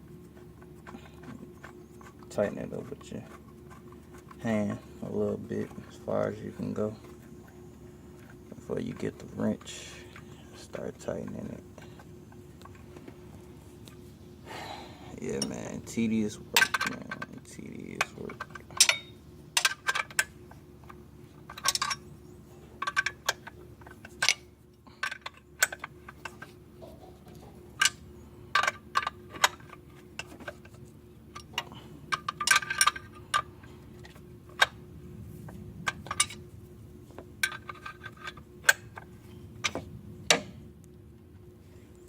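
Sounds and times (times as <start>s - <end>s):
faint steady hum: 0.0s - 42.0s
wrench clinking on bolts: 15.3s - 15.6s, 16.5s - 17.3s, 18.0s - 20.2s.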